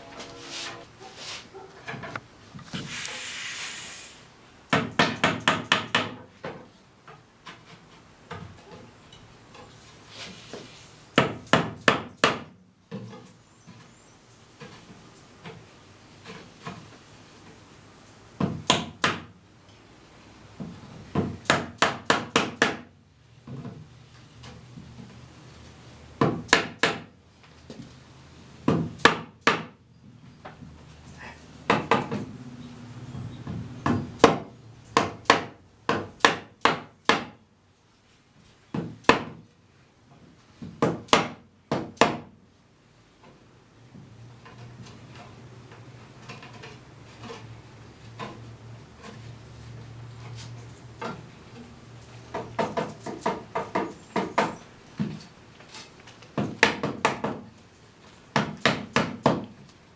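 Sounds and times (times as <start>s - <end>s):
hammer knocking wood: 56.4s - 57.4s.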